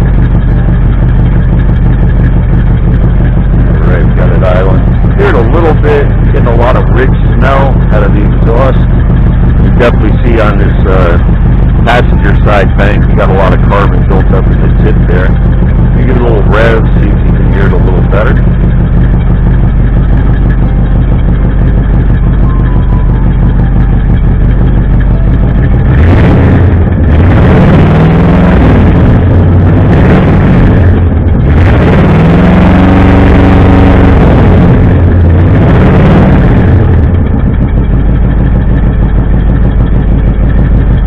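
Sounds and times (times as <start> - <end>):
rough misfiring car engine revving: 0.0 - 41.0.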